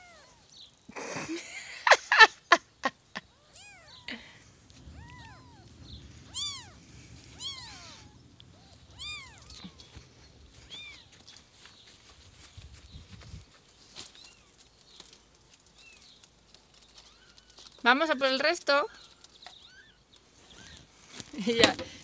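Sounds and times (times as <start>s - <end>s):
kittens mewing: 3.2s - 11.2s
faint low rumble: 3.3s - 13.5s.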